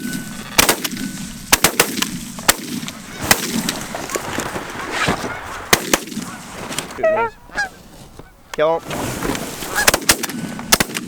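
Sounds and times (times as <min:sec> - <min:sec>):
shotgun blasts: 0:00.0 - 0:03.9, 0:05.7 - 0:06.3, 0:09.8 - 0:11.0
geese honking: 0:02.2 - 0:08.9, 0:09.6 - 0:10.7.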